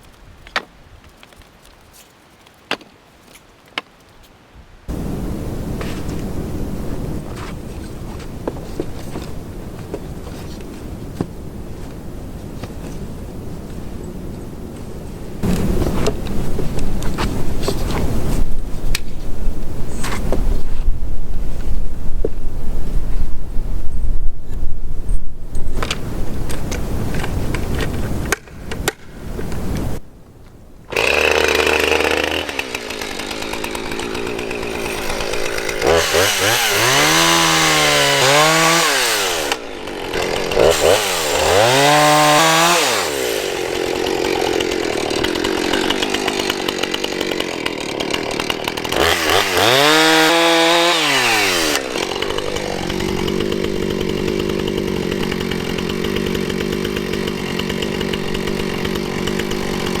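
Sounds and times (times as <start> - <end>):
chainsaw cutting logs: 4.9 - 13.0, 15.4 - 19.2, 30.9 - 60.0.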